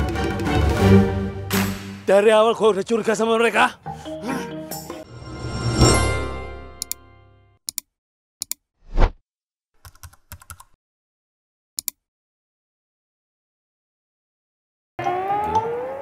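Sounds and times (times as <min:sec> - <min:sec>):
sharp clicks: 0:11.8 - 0:12.0.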